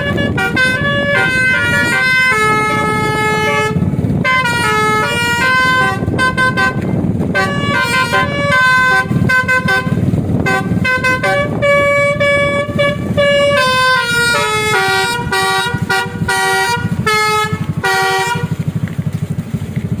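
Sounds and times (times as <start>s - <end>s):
musical air horn playing a tune: 0.0s - 18.6s
low steady rumble: 0.0s - 20.0s.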